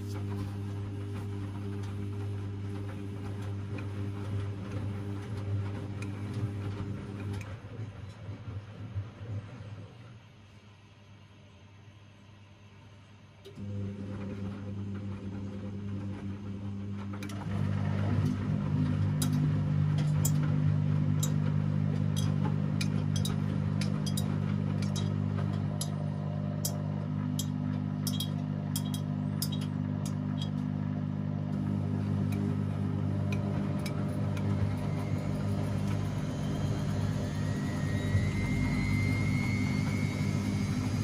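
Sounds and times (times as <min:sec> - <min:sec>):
washing machine motor hum: 0:00.0 - 0:11.6, 0:12.2 - 0:41.0
rising motor whine: 0:31.6 - 0:41.0.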